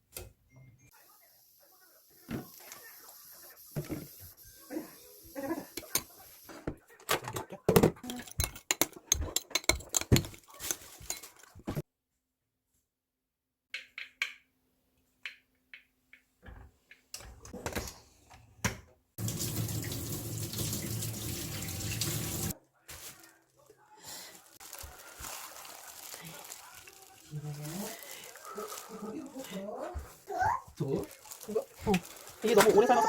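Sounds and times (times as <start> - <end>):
kitchen clicks and clatters: 7.0 - 11.8.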